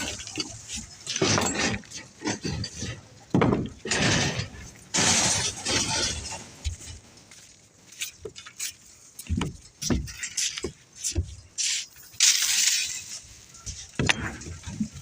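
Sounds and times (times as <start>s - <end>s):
metal rods clinking: 0.0s - 6.9s, 8.0s - 15.0s
scraping rushes: 0.0s - 7.1s.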